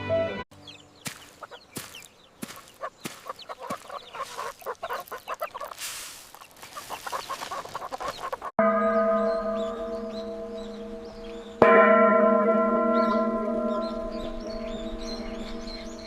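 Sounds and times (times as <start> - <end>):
chickens clucking: 0.6 - 8.6
large bell ringing: 8.6 - 16.0.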